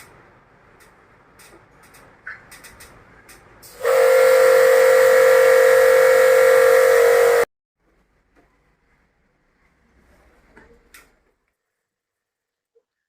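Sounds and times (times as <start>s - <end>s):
pressure washer spraying: 3.7s - 7.4s.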